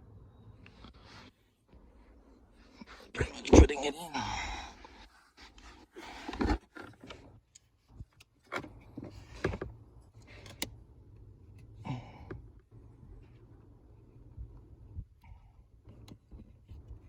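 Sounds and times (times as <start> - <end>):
plastic parts clicking and rattling: 6.1 - 10.8.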